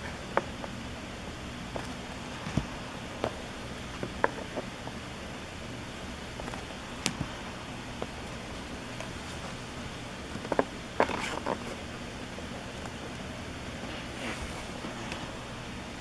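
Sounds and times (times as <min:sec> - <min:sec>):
cards clicking and rustling: 0:10.3 - 0:11.8.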